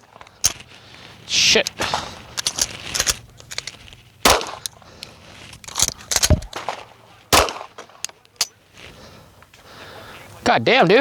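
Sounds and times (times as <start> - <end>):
small clicks: 1.6 - 6.7
pistol gunshots: 4.2 - 4.7, 5.7 - 8.5.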